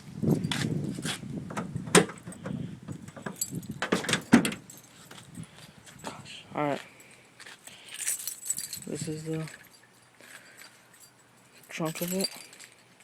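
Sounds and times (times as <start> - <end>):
car keys jangling: 2.0 - 5.5, 7.6 - 12.9.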